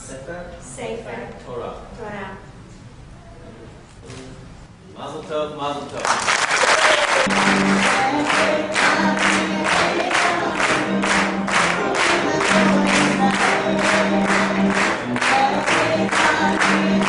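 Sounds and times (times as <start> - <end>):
rhythmic hand clapping: 6.0 - 17.0
held musical notes: 7.2 - 17.0
crowd singing: 7.3 - 17.0.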